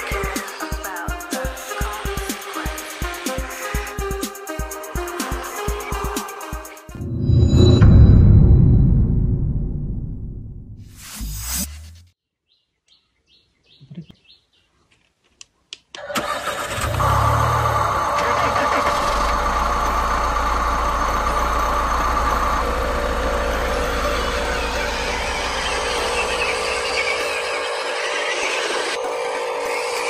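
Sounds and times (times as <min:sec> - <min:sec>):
low hum: 0:06.9 - 0:12.1
faint chirps: 0:24.4 - 0:28.9.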